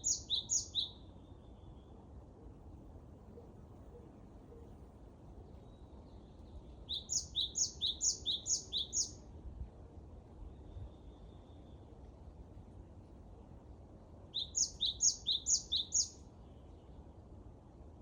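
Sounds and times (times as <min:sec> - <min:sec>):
songbird singing: 0:00.0 - 0:02.0, 0:05.4 - 0:09.3, 0:14.3 - 0:17.0.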